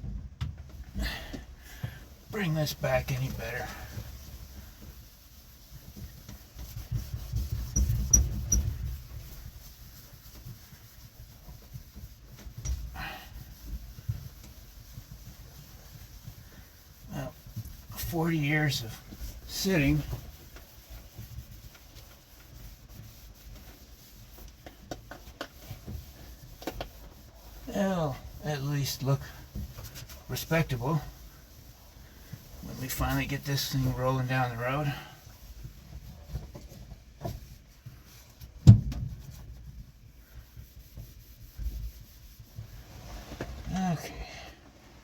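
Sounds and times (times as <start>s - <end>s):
handling and rubbing noises: 0.0s - 45.0s
cloth scrubbing wax onto metal: 2.1s - 38.5s.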